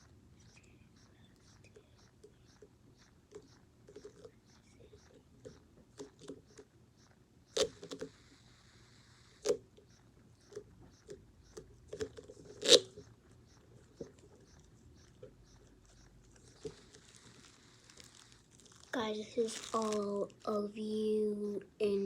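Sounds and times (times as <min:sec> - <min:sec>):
fidget toy clicks and crackles: 0:00.0 - 0:20.7.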